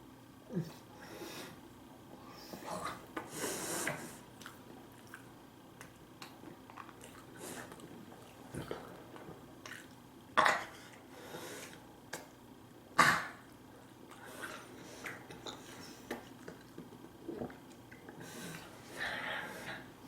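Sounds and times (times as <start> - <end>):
chewing: 4.4 - 10.0, 14.1 - 18.7.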